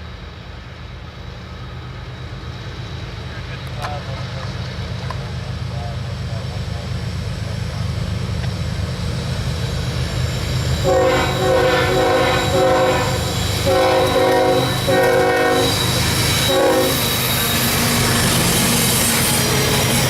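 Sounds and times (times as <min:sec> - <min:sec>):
rumble of passing train: 0:00.0 - 0:20.0
locomotive air horn blasts: 0:10.8 - 0:17.2.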